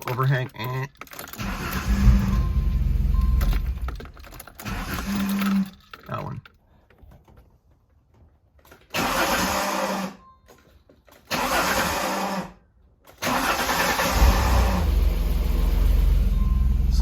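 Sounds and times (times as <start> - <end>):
car starter rushing bursts: 1.3 - 5.6, 8.9 - 10.2, 11.3 - 12.6, 13.2 - 17.0
car engine running: 1.4 - 4.1, 14.1 - 17.0.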